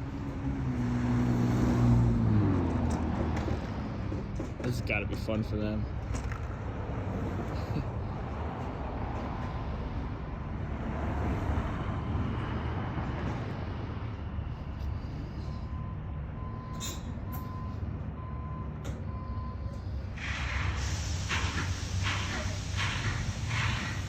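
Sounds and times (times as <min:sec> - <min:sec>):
heavy vehicle engine rumbling: 0:00.0 - 0:24.0
backup alarm beeps: 0:15.4 - 0:19.9.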